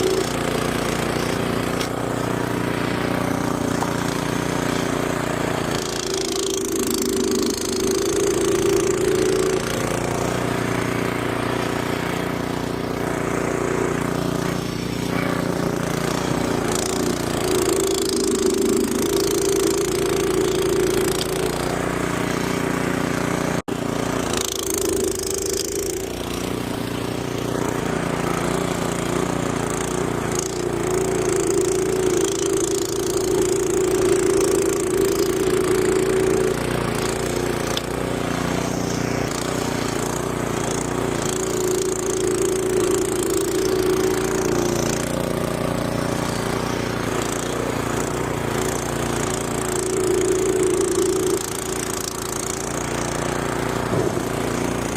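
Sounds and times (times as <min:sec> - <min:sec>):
snowblower engine running: 0:00.0 - 0:54.9.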